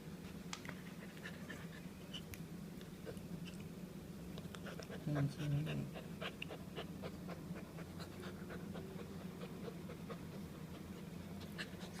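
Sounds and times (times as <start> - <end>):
low steady hum: 0.0 - 12.0
puppy panting: 0.8 - 2.2, 4.6 - 12.0.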